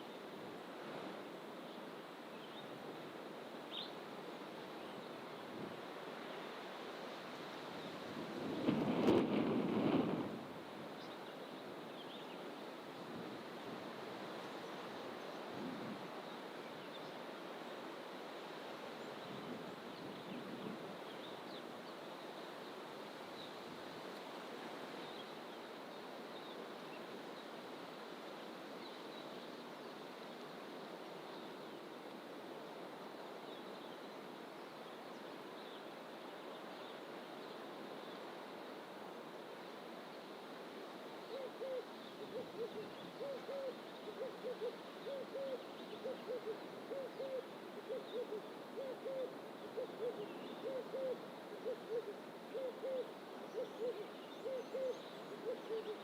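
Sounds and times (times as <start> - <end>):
forest ambience: 0.0 - 8.2, 10.5 - 56.0
bird hooting: 41.3 - 56.0.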